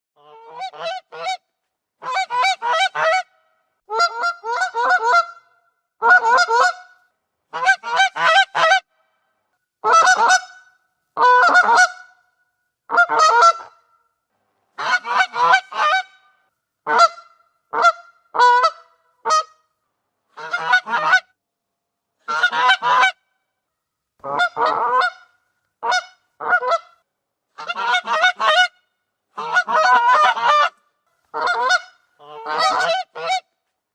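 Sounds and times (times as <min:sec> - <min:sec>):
goose honking: 0:00.2 - 0:01.4, 0:02.0 - 0:06.9, 0:09.8 - 0:12.2, 0:12.9 - 0:13.8, 0:14.8 - 0:19.5, 0:20.4 - 0:21.2, 0:22.3 - 0:23.2, 0:24.2 - 0:26.9, 0:27.6 - 0:28.7, 0:29.4 - 0:33.4.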